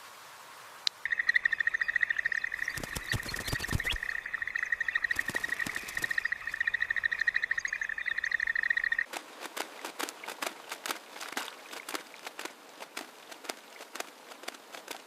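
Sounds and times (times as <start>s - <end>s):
frog trilling: 1.0s - 9.1s
small clicks and ticks: 1.6s - 15.0s.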